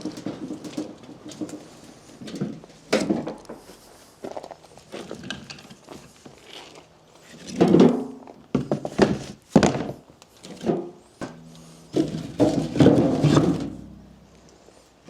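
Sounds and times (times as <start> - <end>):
firewood logs knocking: 11.2 - 14.4.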